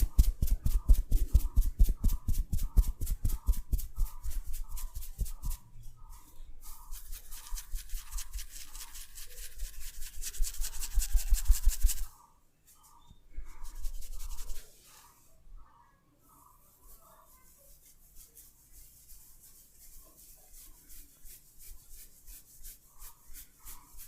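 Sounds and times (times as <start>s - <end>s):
hands rubbing and tapping scalp: 0.0s - 5.7s, 6.6s - 12.1s, 13.5s - 14.7s.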